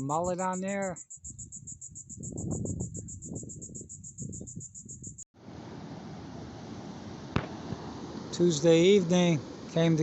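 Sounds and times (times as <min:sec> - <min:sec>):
insect chirping: 0:00.0 - 0:05.2
low wind rumble: 0:01.3 - 0:10.0
wind and surf hiss: 0:05.4 - 0:10.0.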